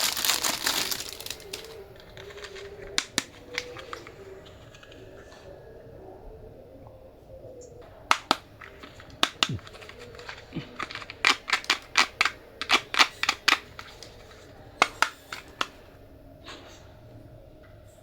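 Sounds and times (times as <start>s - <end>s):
plastic toys clicking: 0.0s - 5.3s, 7.8s - 16.0s.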